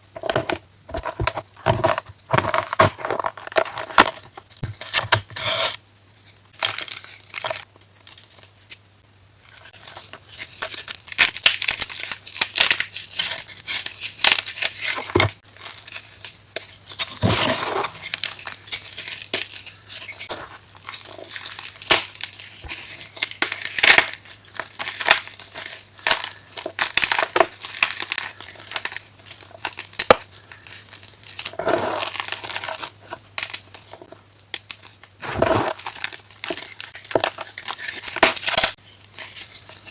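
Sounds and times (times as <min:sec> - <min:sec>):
chalk crunching and crumbling: 0:11.6 - 0:39.9.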